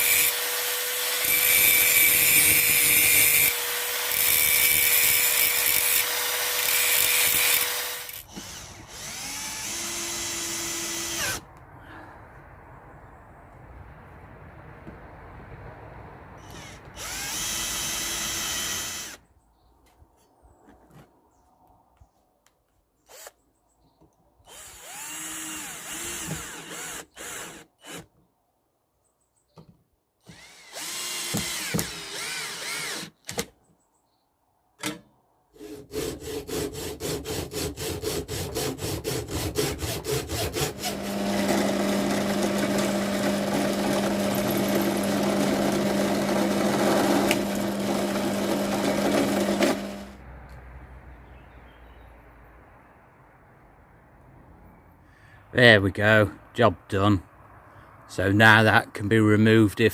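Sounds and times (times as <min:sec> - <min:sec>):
power drill running: 0:00.0 - 0:11.4, 0:16.4 - 0:19.2, 0:24.5 - 0:28.1, 0:30.3 - 0:33.1, 0:40.6 - 0:50.2.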